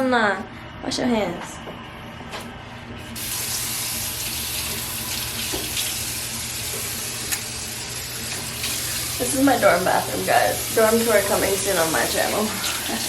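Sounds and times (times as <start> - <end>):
tap water running into basin: 3.2 - 13.0.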